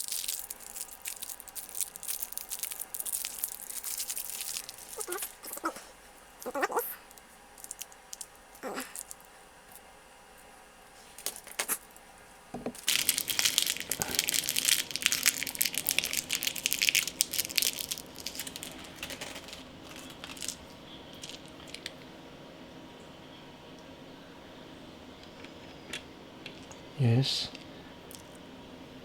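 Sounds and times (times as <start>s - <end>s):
plastic packaging crinkling: 0.0s - 9.8s, 11.0s - 12.0s, 12.7s - 22.1s.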